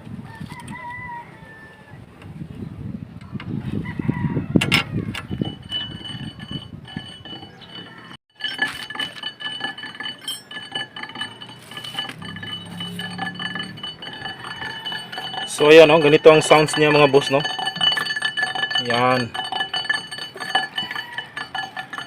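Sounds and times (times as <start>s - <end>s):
brake clattering and clinking: 4.6s - 22.0s
high-pitched brake squeal: 9.6s - 22.0s.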